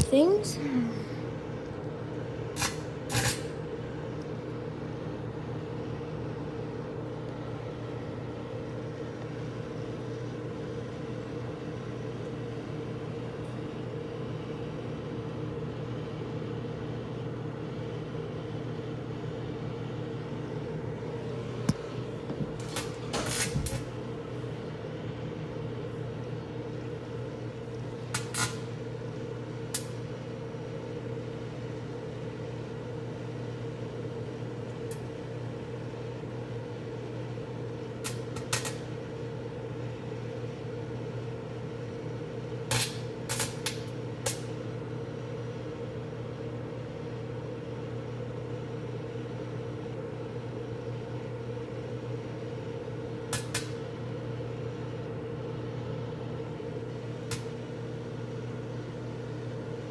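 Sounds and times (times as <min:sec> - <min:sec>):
microwave oven humming: 0:00.0 - 0:59.9.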